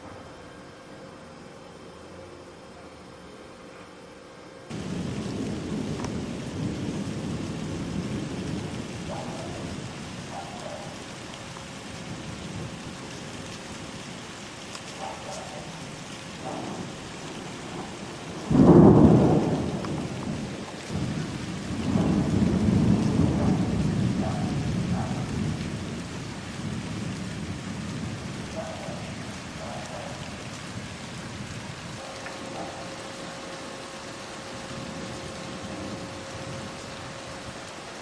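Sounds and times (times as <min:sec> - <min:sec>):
thunder clap and rumble: 0:04.7 - 0:13.9, 0:14.8 - 0:32.9, 0:34.6 - 0:37.7
steady rain: 0:04.7 - 0:38.0.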